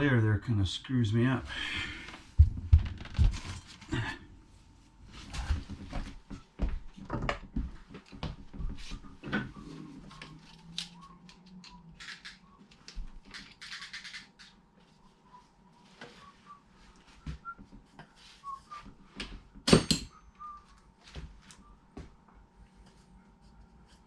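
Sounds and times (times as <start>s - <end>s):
tools clicking and knocking: 19.6s - 20.1s.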